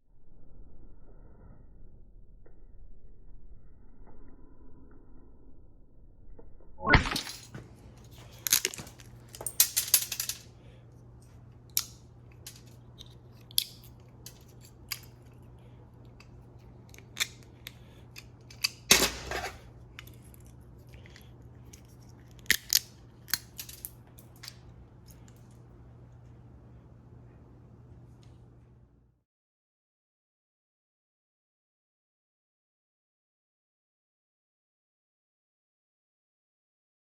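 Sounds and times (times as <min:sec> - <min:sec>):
steady low hum: 0:00.0 - 0:29.2
plastic and metal parts clattering: 0:07.0 - 0:10.4, 0:18.4 - 0:20.2.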